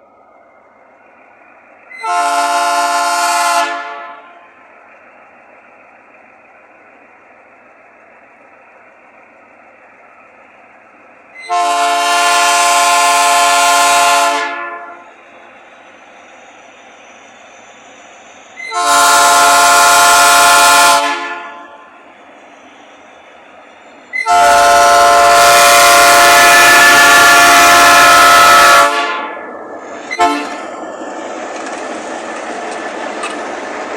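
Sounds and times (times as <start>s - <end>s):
train horn blasts: 1.9s - 4.5s, 11.4s - 15.1s, 18.6s - 21.9s, 24.1s - 29.5s, 30.1s - 30.6s.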